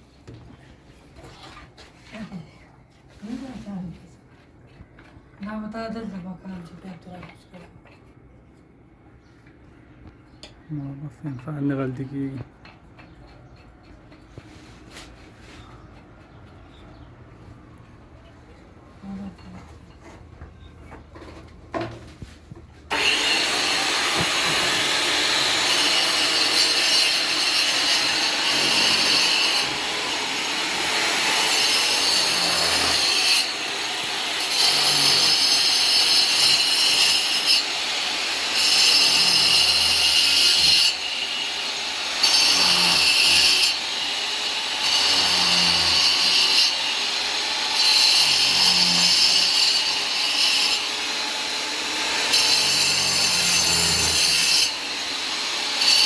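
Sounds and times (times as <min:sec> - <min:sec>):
power tool whining and grinding: 0:22.9 - 0:56.0.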